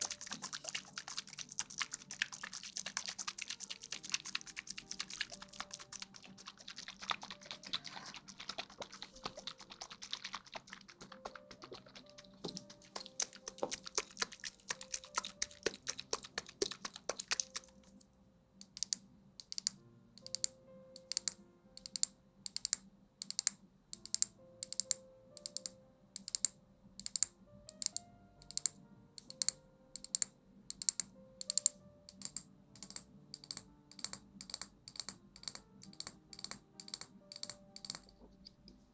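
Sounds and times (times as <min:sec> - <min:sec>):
crackly rustling: 0:00.0 - 0:18.1
crisp clicks: 0:00.0 - 0:38.9
soft background music: 0:00.0 - 0:38.9.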